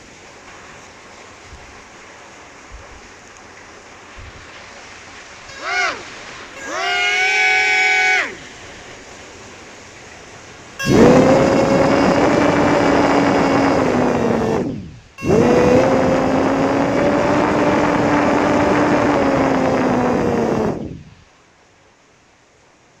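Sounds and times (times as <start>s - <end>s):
siren blasts: 5.5s - 8.5s, 10.8s - 21.1s.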